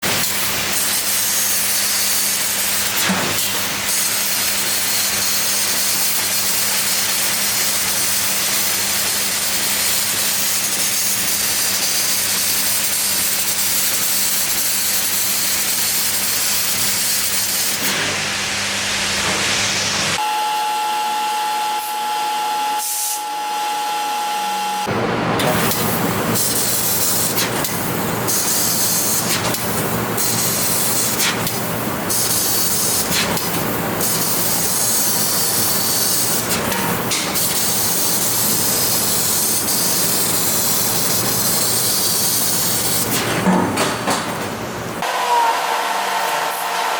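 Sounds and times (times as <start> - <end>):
laser cutter gas jet hissing: 0.0 - 20.2, 21.2 - 43.3
steady machine whine: 18.2 - 30.8.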